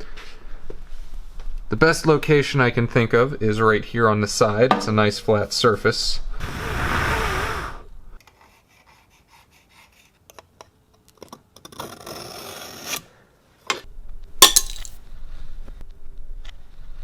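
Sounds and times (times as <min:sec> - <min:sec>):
metallic clanks ringing: 0:14.4 - 0:14.9.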